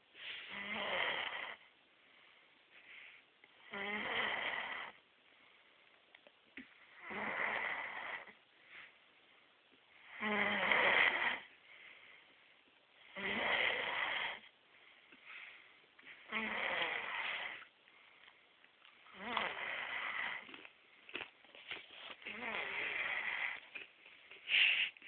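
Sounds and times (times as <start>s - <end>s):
snoring: 0.5s - 1.6s, 3.6s - 5.0s, 6.9s - 8.4s, 10.0s - 11.5s, 13.1s - 14.5s, 16.2s - 17.7s, 19.1s - 20.5s, 22.2s - 23.7s.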